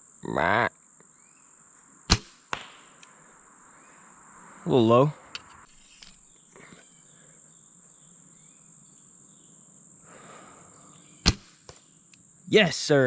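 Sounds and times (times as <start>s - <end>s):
crickets trilling: 0.0s - 13.0s
bow being shot snap: 2.1s - 3.1s, 11.2s - 11.9s.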